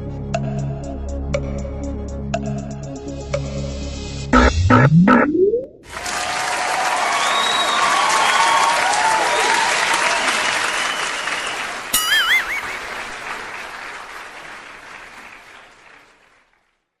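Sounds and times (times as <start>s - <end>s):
brief warbling tone: 4.4s - 5.8s
audience applause and cheering: 5.8s - 16.6s.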